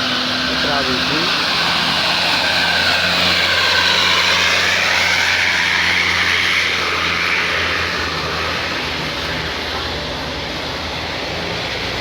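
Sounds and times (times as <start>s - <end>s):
bus diesel engine straining: 0.0s - 12.0s.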